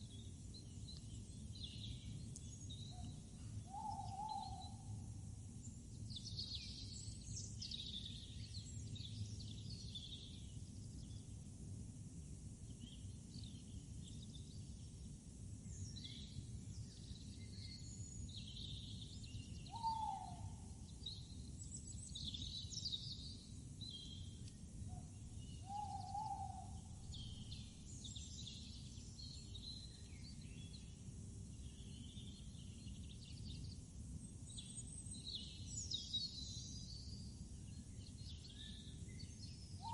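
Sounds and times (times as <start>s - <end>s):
birds chirping: 39.6s - 39.9s.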